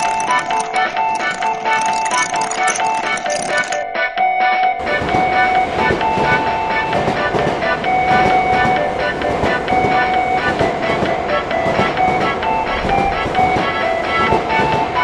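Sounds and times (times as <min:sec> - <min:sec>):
crossing warning tones: 0:00.0 - 0:03.8, 0:04.8 - 0:15.0
train rumbling and clattering: 0:04.8 - 0:15.0.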